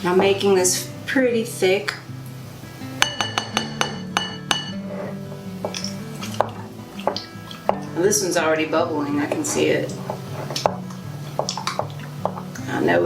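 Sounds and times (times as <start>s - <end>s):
background music: 0.0s - 13.0s
spoon clinking against glass jar: 3.0s - 4.8s.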